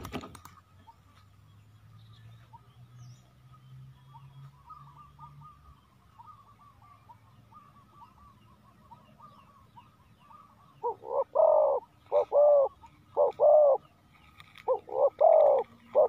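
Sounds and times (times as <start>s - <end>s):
dove cooing: 10.2s - 16.0s.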